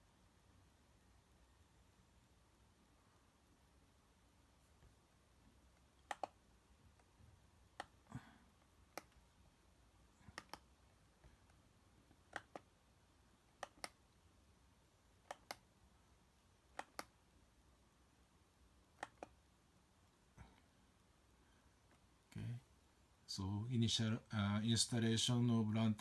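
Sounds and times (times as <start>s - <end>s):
mouse button clicking: 6.0s - 6.4s, 7.8s - 8.0s, 10.3s - 10.7s, 12.3s - 12.7s, 13.6s - 14.0s, 15.2s - 15.6s, 16.7s - 17.2s, 19.0s - 19.4s.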